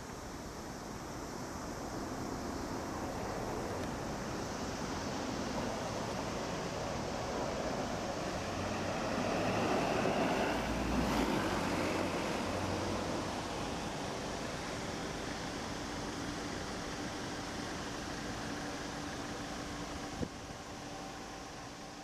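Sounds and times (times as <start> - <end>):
city traffic noise: 0.0 - 22.0
vehicle passing: 8.3 - 13.2.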